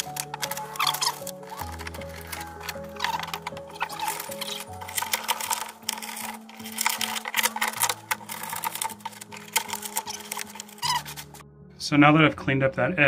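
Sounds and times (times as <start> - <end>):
rapid clicking and scratching: 0.0 - 11.4.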